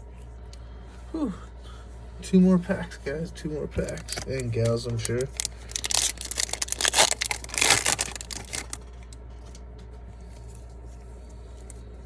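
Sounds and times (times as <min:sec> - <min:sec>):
low steady hum: 0:00.0 - 0:12.0
foil pack tearing and crinkling: 0:03.8 - 0:09.6.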